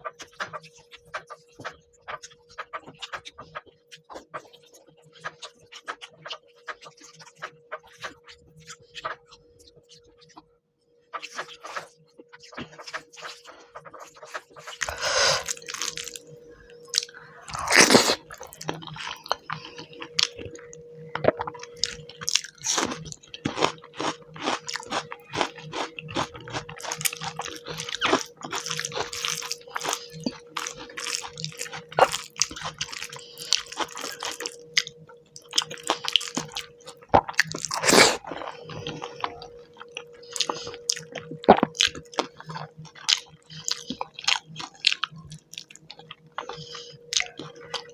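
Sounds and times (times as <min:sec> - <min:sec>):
faint steady hum: 0:13.5 - 0:47.9
wet chewing and lip smacks: 0:14.2 - 0:47.9.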